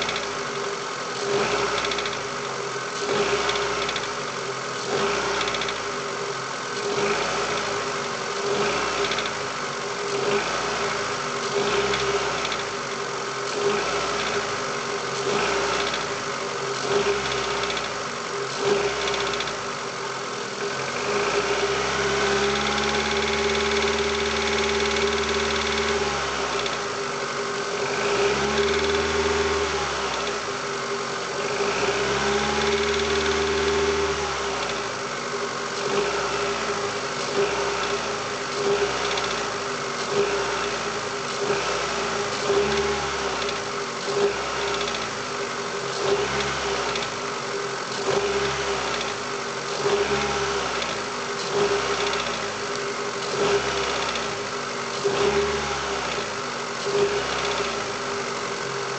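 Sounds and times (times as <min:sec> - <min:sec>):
engine knock: 0:00.0 - 0:00.4, 0:01.3 - 0:04.2, 0:04.9 - 0:05.9, 0:08.5 - 0:09.4, 0:11.6 - 0:12.8, 0:15.7 - 0:16.1, 0:16.9 - 0:18.0, 0:18.6 - 0:19.7, 0:22.3 - 0:26.9, 0:28.3 - 0:29.5, 0:32.4 - 0:33.9, 0:38.7 - 0:39.4, 0:42.4 - 0:45.2, 0:48.0 - 0:52.6, 0:53.2 - 0:54.4, 0:56.8 - 0:58.9
car engine revving: 0:00.0 - 0:58.9.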